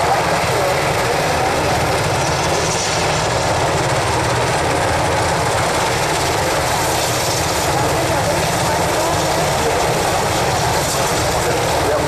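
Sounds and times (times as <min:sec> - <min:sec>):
helicopter running: 0:00.0 - 0:12.0.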